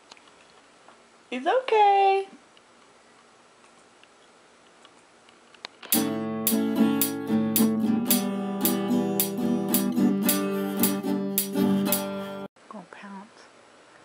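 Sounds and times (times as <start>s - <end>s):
strummed acoustic guitar: 5.9s - 12.5s.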